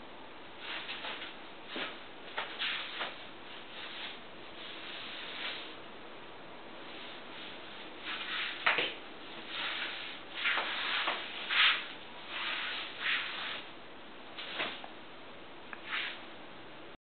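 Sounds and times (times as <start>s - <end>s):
feet scuffing on floor: 0.6s - 5.8s, 6.9s - 13.7s, 14.4s - 14.9s, 15.8s - 16.2s.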